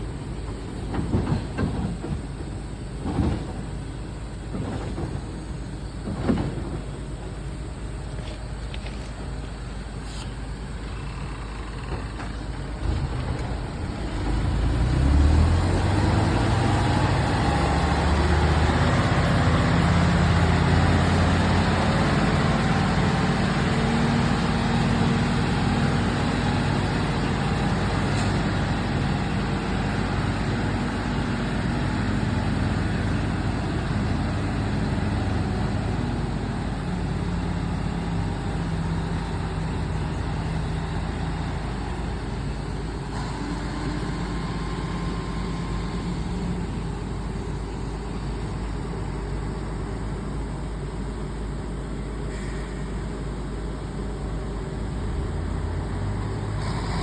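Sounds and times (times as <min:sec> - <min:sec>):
diesel truck engine revving: 0:10.6 - 0:50.5, 0:53.4 - 0:57.0.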